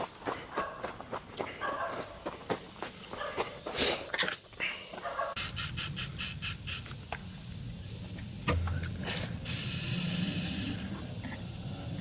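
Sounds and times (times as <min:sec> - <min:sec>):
footsteps on gravel: 0:00.0 - 0:04.1
aerosol can being shaken: 0:09.1 - 0:10.8.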